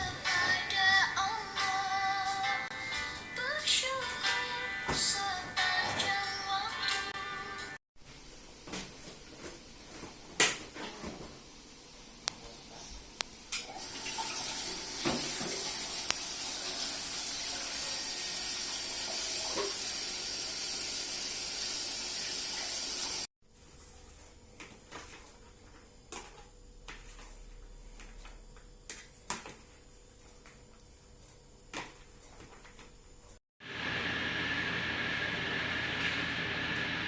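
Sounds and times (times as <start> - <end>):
tap water running into sink: 13.6 - 23.3.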